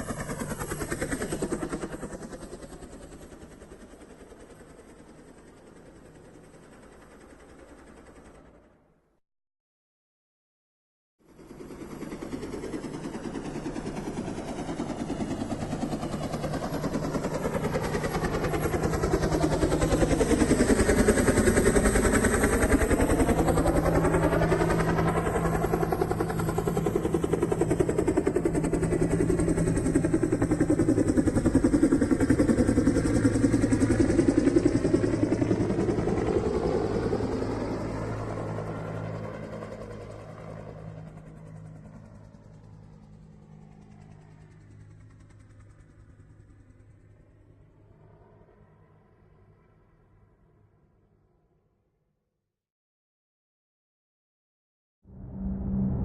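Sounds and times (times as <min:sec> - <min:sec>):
aircraft engine drone passing: 0:55.1 - 0:56.0.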